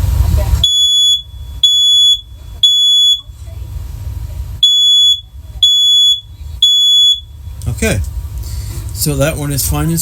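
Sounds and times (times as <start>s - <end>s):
smoke alarm beeping: 0.6s - 3.3s, 4.6s - 7.4s.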